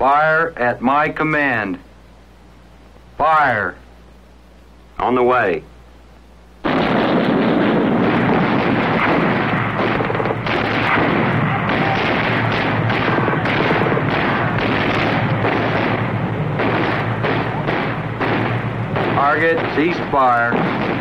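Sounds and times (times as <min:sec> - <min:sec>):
tank gunfire and explosions: 0:06.6 - 0:21.0.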